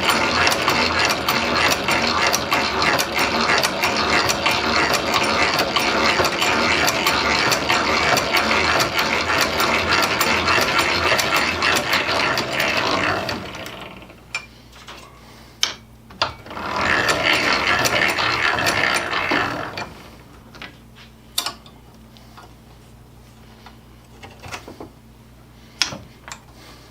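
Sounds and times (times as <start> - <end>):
hand drill gears whirring: 0.0 - 14.3, 16.4 - 20.2.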